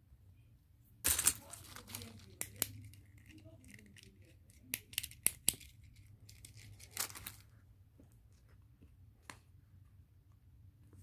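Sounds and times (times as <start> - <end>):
crinkly rustle: 1.4 - 2.4.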